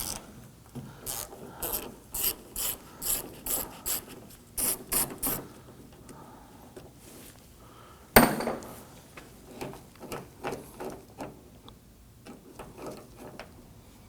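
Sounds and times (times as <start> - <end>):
ratchet clicks and knocks: 0.0 - 0.2, 1.0 - 5.4
sharp clunk: 8.2 - 8.8.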